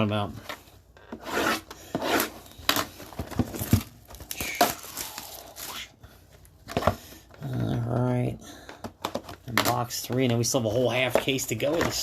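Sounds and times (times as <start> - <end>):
packaging crinkling: 3.2 - 5.9
packaging tearing: 4.2 - 5.9.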